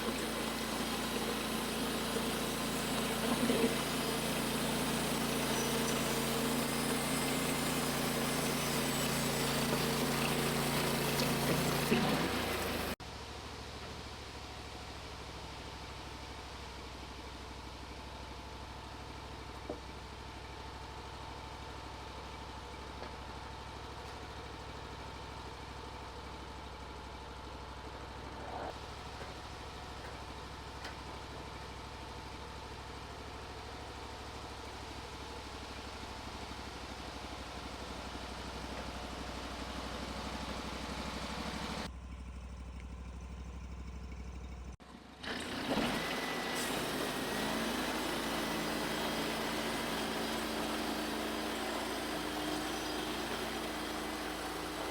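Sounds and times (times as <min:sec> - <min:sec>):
sawmill engine running: 0:00.0 - 0:13.0, 0:24.4 - 0:54.9.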